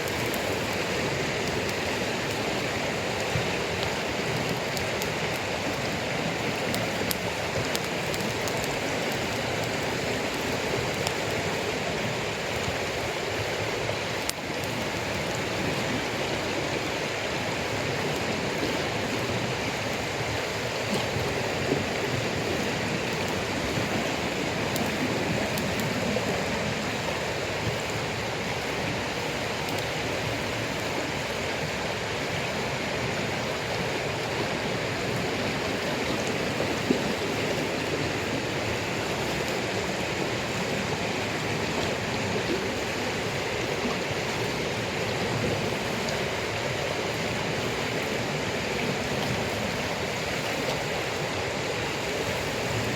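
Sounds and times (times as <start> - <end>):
campfire pops: 0.0 - 16.1, 18.1 - 30.9
light rain hissing: 0.0 - 52.9.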